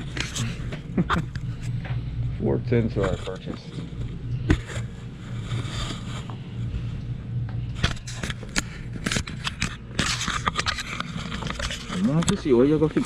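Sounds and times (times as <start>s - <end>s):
sharp clicks and scrapes: 0.0s - 0.5s, 7.7s - 12.5s
steady low hum: 0.0s - 13.0s.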